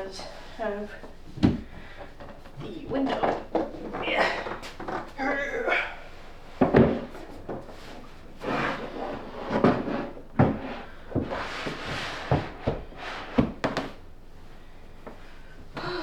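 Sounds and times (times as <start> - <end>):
wooden furniture parts knocking: 1.3 - 5.2, 6.6 - 8.1
wood scraping: 6.5 - 13.8.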